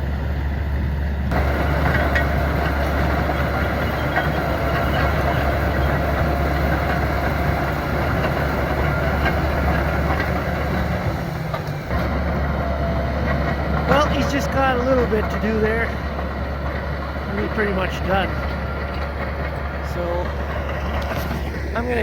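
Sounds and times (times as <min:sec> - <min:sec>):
diesel engine droning: 0:00.0 - 0:22.0
steel tracks clattering and whining: 0:00.0 - 0:22.0.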